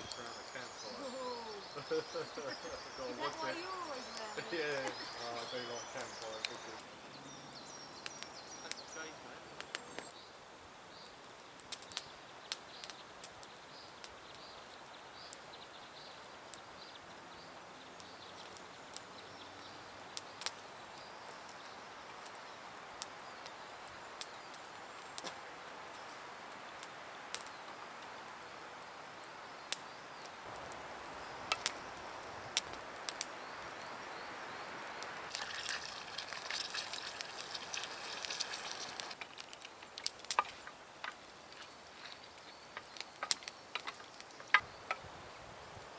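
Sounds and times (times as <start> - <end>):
fire hiss: 0.0 - 7.0, 20.1 - 45.9
campfire crackling and popping: 0.0 - 45.9.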